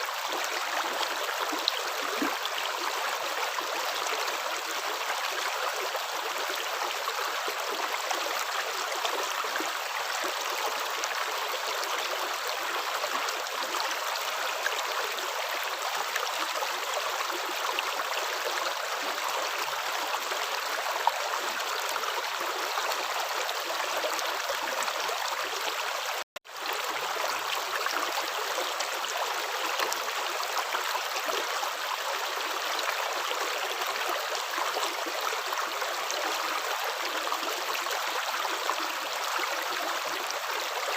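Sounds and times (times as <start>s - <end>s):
running water flowing: 0.0s - 4.4s.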